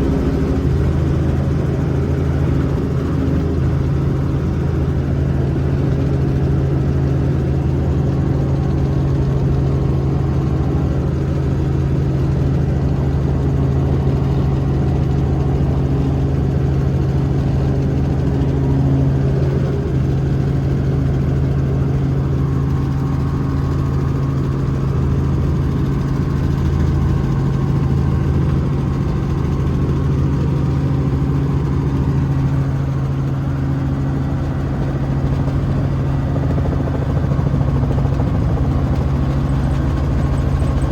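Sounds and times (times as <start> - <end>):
helicopter engine and rotor drone: 0.0 - 40.9.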